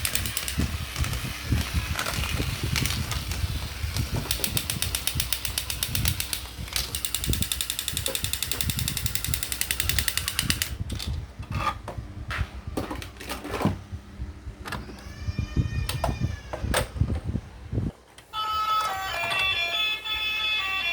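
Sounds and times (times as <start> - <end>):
toy mechanism clicking rattle: 0.0 - 11.1.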